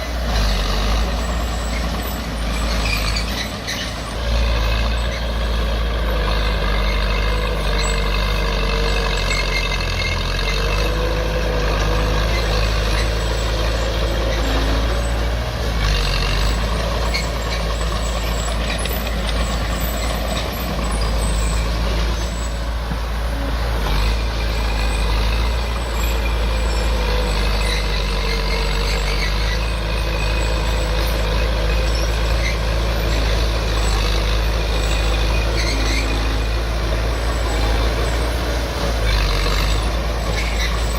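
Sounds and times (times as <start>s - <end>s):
heavy machinery engine drone: 0.0s - 40.9s
wavering high squeal: 1.2s - 5.4s, 24.1s - 38.6s.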